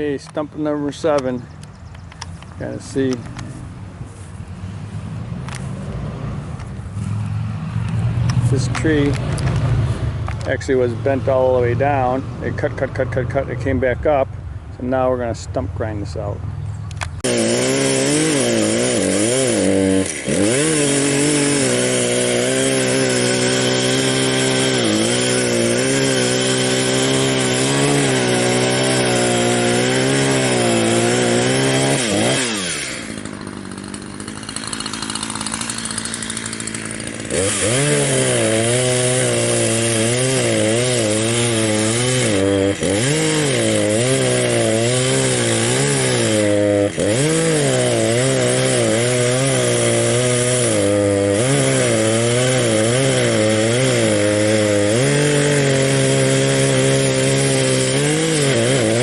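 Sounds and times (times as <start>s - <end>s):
cutter wheel grinding stump: 0.0s - 14.2s, 16.9s - 59.0s
engine running under load: 0.9s - 14.0s.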